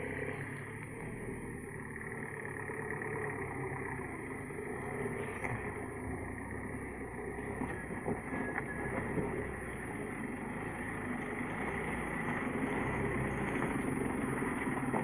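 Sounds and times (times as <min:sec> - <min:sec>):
truck engine running: 0:00.0 - 0:15.0.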